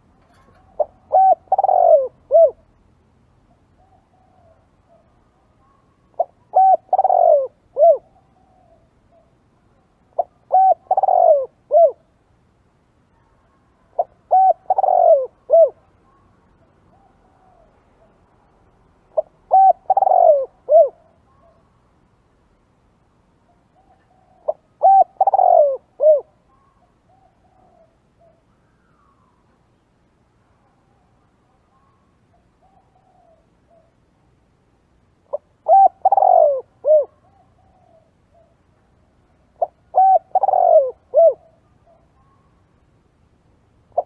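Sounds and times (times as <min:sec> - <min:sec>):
dove cooing: 0:00.0 - 0:02.8, 0:03.5 - 0:09.4, 0:10.1 - 0:12.1, 0:13.2 - 0:16.2, 0:16.9 - 0:18.2, 0:19.1 - 0:21.6, 0:23.5 - 0:29.4, 0:31.7 - 0:34.0, 0:35.2 - 0:38.8, 0:39.5 - 0:42.6.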